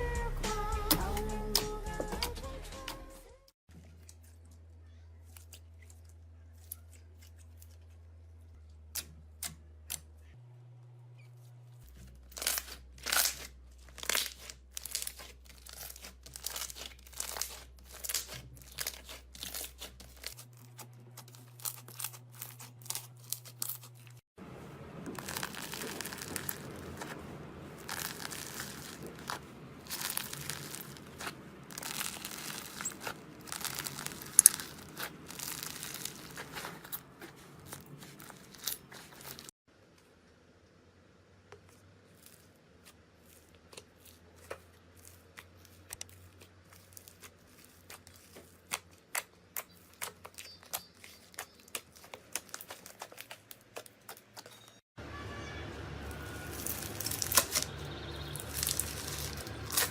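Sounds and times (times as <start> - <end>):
slime crackling and popping: 12.2 - 24.2, 25.1 - 27.2, 27.8 - 39.5, 43.2 - 54.6, 56.1 - 59.9.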